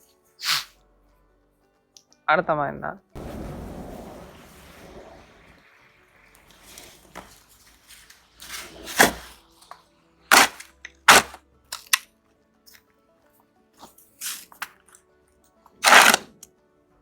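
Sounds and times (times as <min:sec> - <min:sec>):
snow shovel scraping ice: 0:06.6 - 0:09.5, 0:10.3 - 0:11.4, 0:14.2 - 0:14.6, 0:15.8 - 0:16.4.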